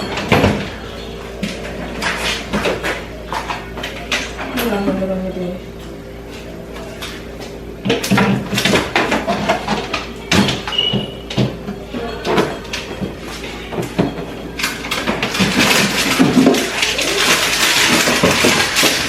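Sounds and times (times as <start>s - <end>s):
household items knocking and clattering: 7.8s - 19.0s.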